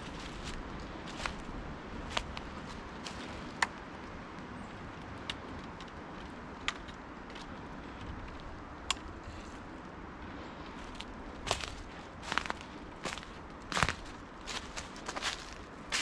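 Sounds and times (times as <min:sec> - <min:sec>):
footsteps on dry leaves: 0:00.0 - 0:03.6, 0:10.7 - 0:16.0.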